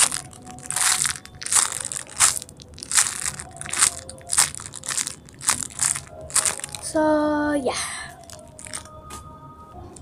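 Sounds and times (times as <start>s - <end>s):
plastic packaging crinkling: 0.0s - 7.0s, 8.1s - 8.9s.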